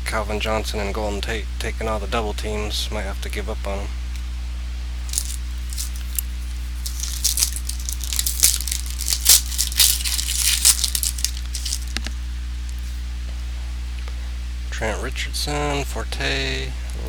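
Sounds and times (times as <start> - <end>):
low electrical hum: 0.0 - 17.0
cards flipping and sliding: 5.1 - 12.0.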